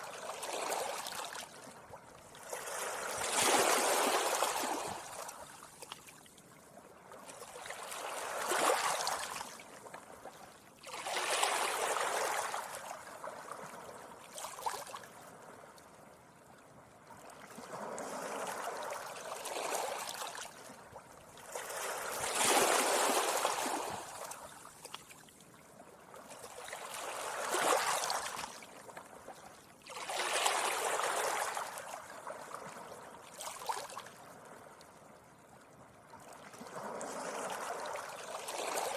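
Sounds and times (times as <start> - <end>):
sea waves washing on beach: 2.4 - 5.7, 21.4 - 24.6.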